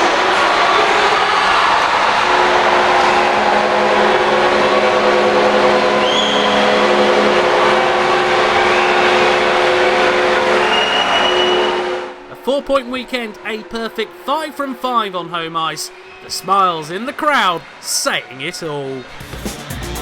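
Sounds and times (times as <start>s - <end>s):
crowd cheering: 0.0s - 20.0s
short rising whistles: 6.0s - 6.8s, 10.6s - 11.8s.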